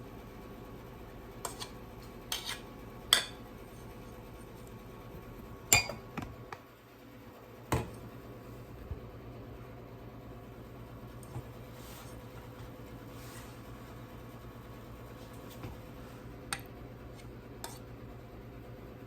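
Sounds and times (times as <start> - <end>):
spoon clinking against dishes: 5.7 - 6.0.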